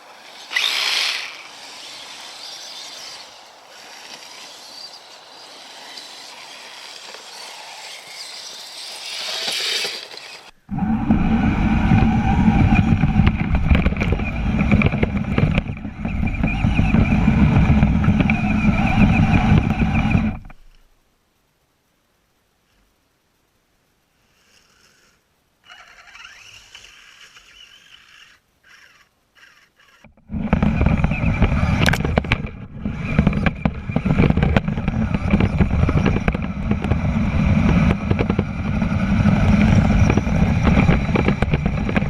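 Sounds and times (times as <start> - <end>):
electric motor and gear whine: 0.0 - 20.8, 25.6 - 42.0.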